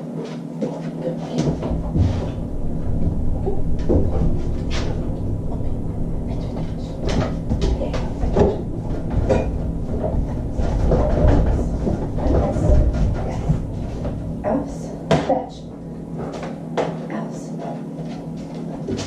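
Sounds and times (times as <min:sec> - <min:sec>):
low refrigerator hum: 0:00.0 - 0:19.0
knocks and rattles: 0:01.3 - 0:15.4.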